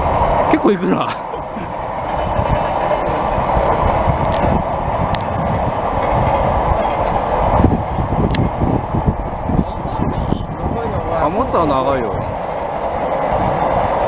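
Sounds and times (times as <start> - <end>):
freight train rumble: 0.0 - 14.0.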